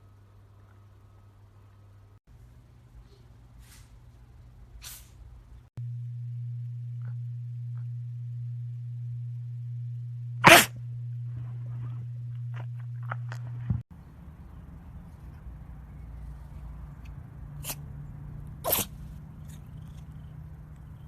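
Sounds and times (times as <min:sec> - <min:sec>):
steady low hum: 0:00.0 - 0:21.0
animal sneezing: 0:10.4 - 0:10.8, 0:17.6 - 0:17.8, 0:18.6 - 0:19.0.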